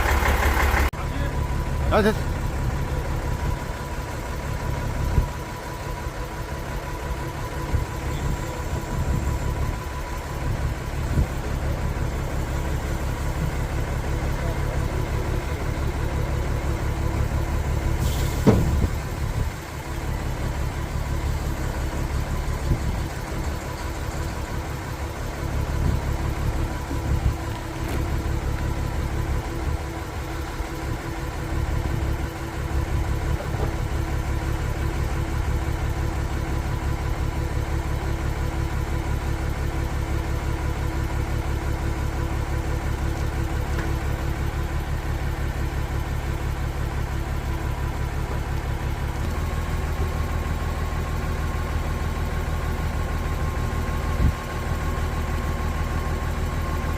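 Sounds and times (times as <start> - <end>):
diesel engine idling: 0.0 - 56.9
sharp clunk: 18.1 - 18.9.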